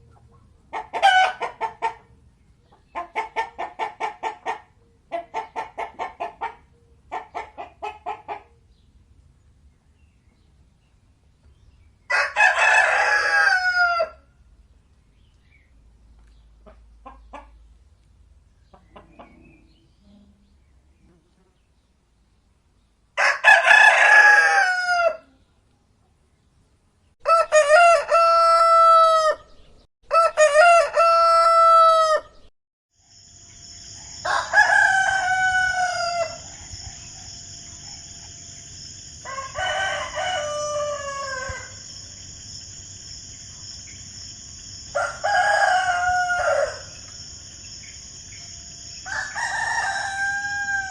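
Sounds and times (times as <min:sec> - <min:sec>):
roosters crowing: 0:00.8 - 0:02.0, 0:12.1 - 0:14.3, 0:23.2 - 0:25.3, 0:27.2 - 0:32.4, 0:33.8 - 0:42.5, 0:44.6 - 0:47.3, 0:48.0 - 0:50.9.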